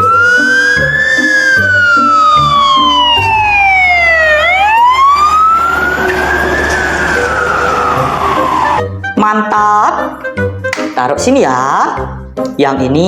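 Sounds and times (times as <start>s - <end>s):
wailing fire engine siren: 0.0s - 9.0s
stepped low tune notes: 0.0s - 9.1s.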